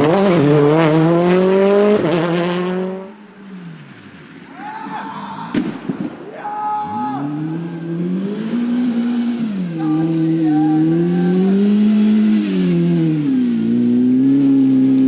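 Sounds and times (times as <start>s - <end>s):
rally car engine at full throttle: 0.0s - 5.8s, 6.9s - 15.0s
sharp crack: 3.8s - 7.4s
faint engine: 5.5s - 15.0s.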